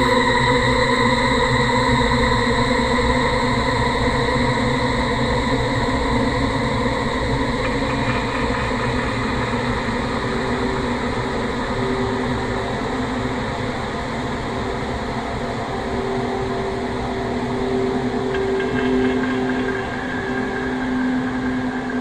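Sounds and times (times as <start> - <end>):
rumbling metallic drone: 18.0 - 22.0.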